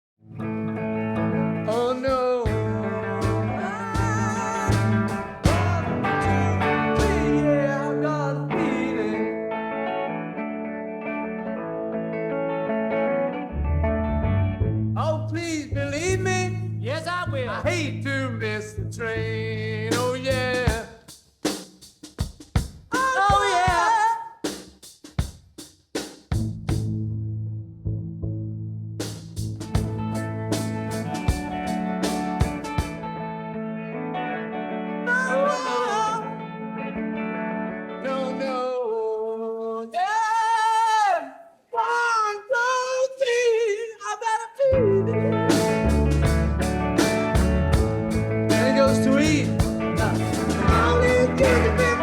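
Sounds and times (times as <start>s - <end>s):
guitar: 0.2s - 20.9s, 22.9s - 24.1s, 29.4s - 41.2s, 44.6s - 52.0s
person singing: 1.7s - 9.8s, 22.9s - 24.4s, 35.0s - 36.6s, 38.0s - 45.8s, 48.5s - 52.0s
drum hits: 2.1s - 7.5s, 20.0s - 23.9s, 24.5s - 27.0s, 29.0s - 33.0s, 45.5s - 52.0s
steady bass line: 2.5s - 8.4s, 13.4s - 20.8s, 26.3s - 33.3s, 44.8s - 52.0s.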